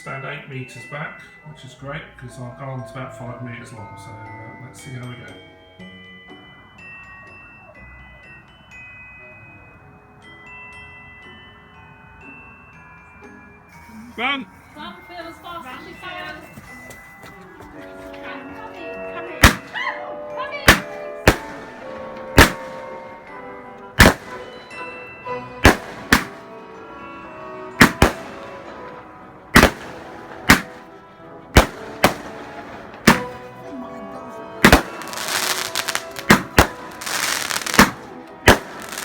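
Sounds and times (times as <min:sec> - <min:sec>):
crackling firework stars: 0:19.4 - 0:19.8, 0:20.7 - 0:23.0, 0:24.0 - 0:24.6, 0:25.6 - 0:26.5, 0:27.8 - 0:28.6, 0:29.6 - 0:30.9, 0:31.6 - 0:33.5, 0:34.6 - 0:39.0
firework shots banging: 0:19.4 - 0:19.8, 0:20.7 - 0:23.1, 0:24.0 - 0:24.7, 0:25.6 - 0:26.5, 0:27.8 - 0:28.9, 0:29.5 - 0:30.9, 0:31.6 - 0:33.5, 0:34.6 - 0:39.0.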